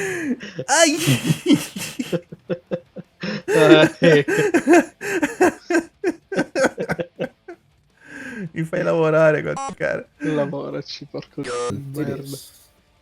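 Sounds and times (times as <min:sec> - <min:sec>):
people laughing in short bursts: 0:01.0 - 0:07.6.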